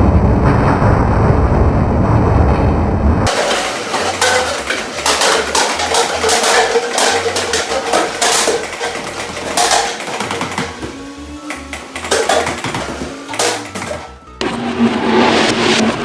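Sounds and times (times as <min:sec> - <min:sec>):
plastic cups clattering: 0:03.3 - 0:14.7.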